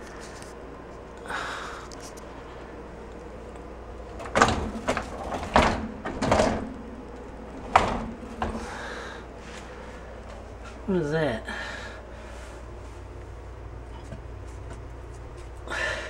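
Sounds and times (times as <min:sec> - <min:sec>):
dishwasher door and racks rattling: 0:04.0 - 0:09.0.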